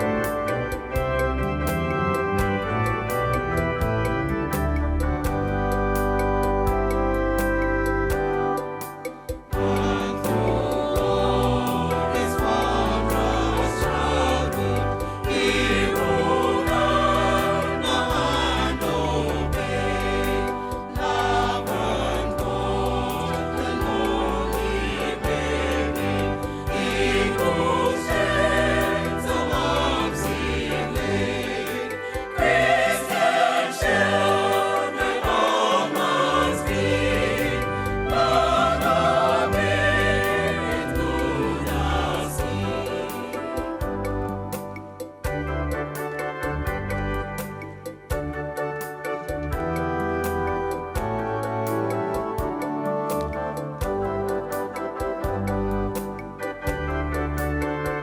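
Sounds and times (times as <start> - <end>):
bass: 0.0 - 58.0
percussion beat: 4.6 - 57.9
choir singing gospel: 9.2 - 45.4.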